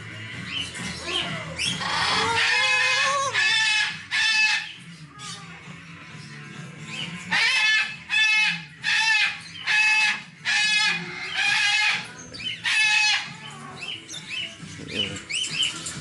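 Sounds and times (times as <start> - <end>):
cockatoo screeching: 1.0 - 5.4, 7.3 - 14.0.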